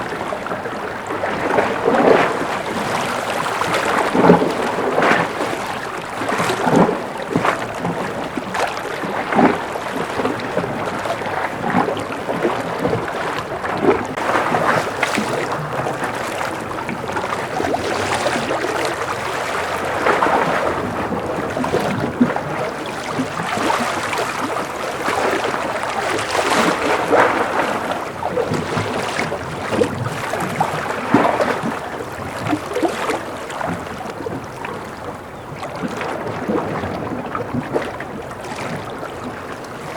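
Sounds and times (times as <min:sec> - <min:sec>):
ocean waves lapping and splashing: 0:00.0 - 0:39.9.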